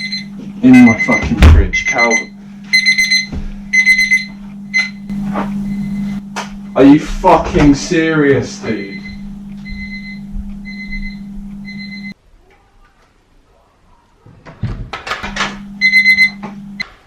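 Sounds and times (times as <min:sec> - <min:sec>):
rapid alarm clock beeps: 0:00.0 - 0:06.9, 0:08.8 - 0:12.2, 0:15.8 - 0:16.4
alarm clock beeping: 0:00.0 - 0:07.0, 0:08.7 - 0:12.2, 0:15.8 - 0:16.4
low hum: 0:01.6 - 0:08.0, 0:08.8 - 0:12.2.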